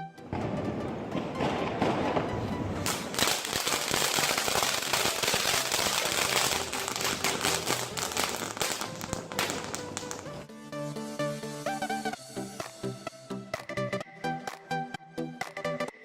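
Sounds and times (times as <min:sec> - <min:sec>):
firecracker crackling pops: 0:00.3 - 0:10.4.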